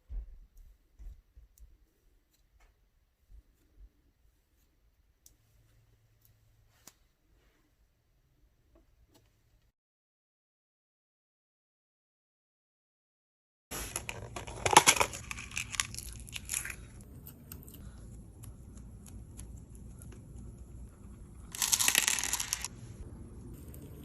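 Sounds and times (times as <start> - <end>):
slime crackling and crunching: 13.7 - 17.9, 18.7 - 22.7.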